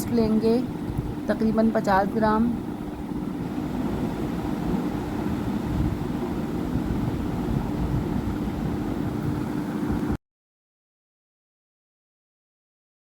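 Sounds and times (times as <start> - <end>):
gas stove burner rumbling: 0.0 - 10.2.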